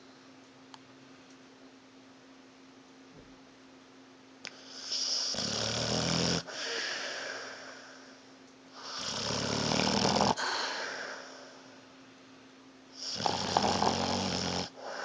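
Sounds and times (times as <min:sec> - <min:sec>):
dog snoring: 0:04.6 - 0:06.9, 0:08.8 - 0:10.4, 0:13.0 - 0:15.0
breathy exhale: 0:06.5 - 0:09.0, 0:10.3 - 0:11.8, 0:14.8 - 0:15.0.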